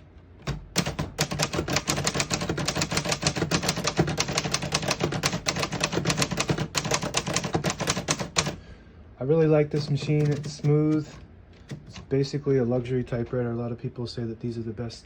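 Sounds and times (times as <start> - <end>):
typewriter key strikes: 0.4 - 8.6, 9.8 - 12.1.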